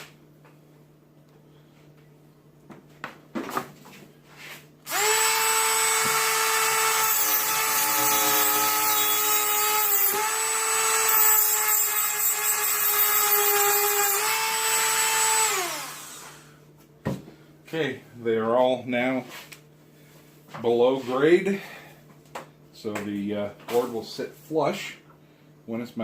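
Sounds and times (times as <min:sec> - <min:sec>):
rotary tool high-pitched whine: 0:04.9 - 0:16.5.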